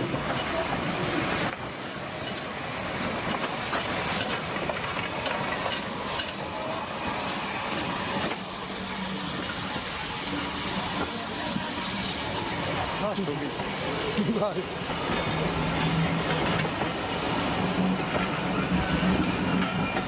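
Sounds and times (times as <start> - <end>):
steam hissing: 0.0 - 20.0
steam locomotive moving slowly: 0.0 - 20.0.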